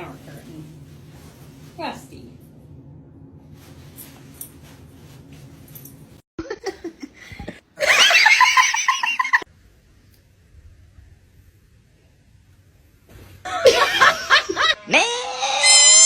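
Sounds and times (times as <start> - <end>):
person laughing hard: 6.4 - 9.4, 13.5 - 15.2.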